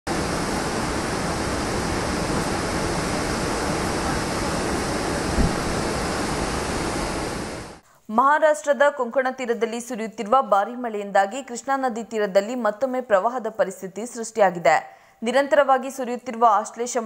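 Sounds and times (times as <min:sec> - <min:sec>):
rushing water: 0:00.1 - 0:07.8
short low thump: 0:05.2 - 0:05.9.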